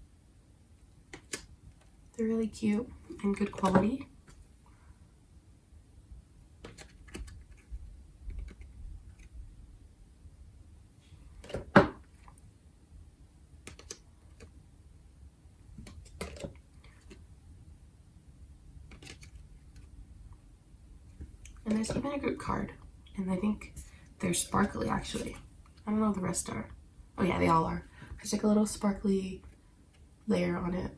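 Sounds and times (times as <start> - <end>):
cards being handled: 23.7 - 25.5.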